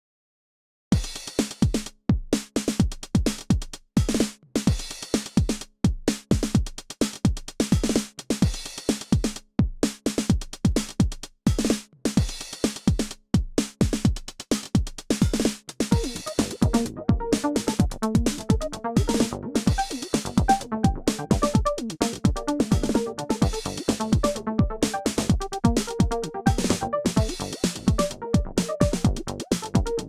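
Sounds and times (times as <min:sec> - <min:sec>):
kick drum thump: 0:24.6 - 0:26.6.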